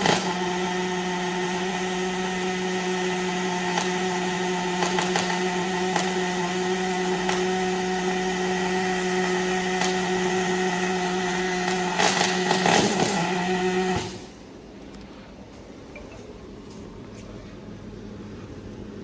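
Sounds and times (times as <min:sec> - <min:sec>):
welding machine humming: 0:00.0 - 0:14.4
welding crackle: 0:03.5 - 0:14.3.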